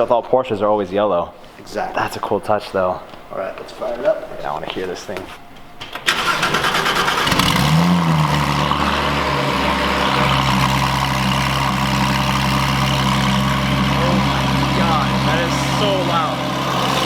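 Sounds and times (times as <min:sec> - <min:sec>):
sports car engine starting: 0:06.0 - 0:17.0
loud car engine idling: 0:06.1 - 0:17.0.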